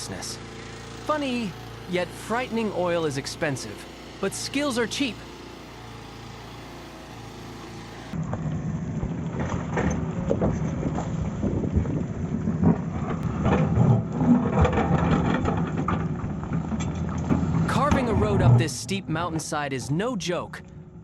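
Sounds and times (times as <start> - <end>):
heavy machine engine running: 0.0 - 19.9
knocks and clanks: 12.6 - 18.6.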